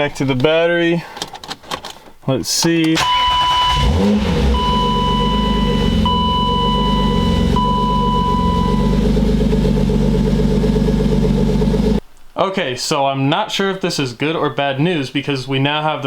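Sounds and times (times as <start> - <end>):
car engine idling: 3.2 - 12.0
high electronic warning tone: 4.5 - 9.1.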